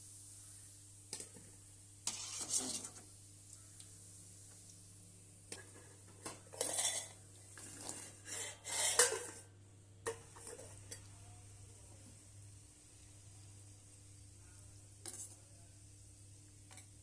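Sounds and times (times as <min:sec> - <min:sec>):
metal utensils clinking against a pot: 0:05.5 - 0:09.5.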